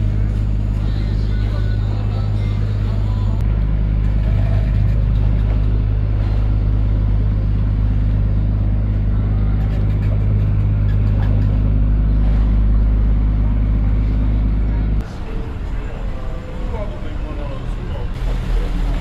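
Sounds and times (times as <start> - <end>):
engine droning: 0.0 - 19.0.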